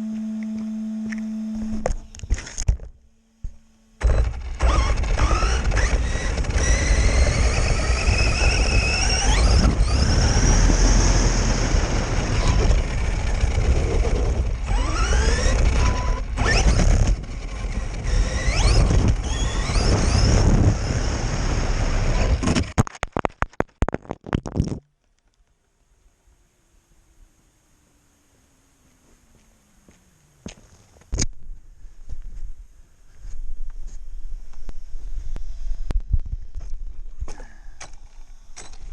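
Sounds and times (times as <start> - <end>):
electric motor whining: 0.0 - 2.6, 4.0 - 22.6.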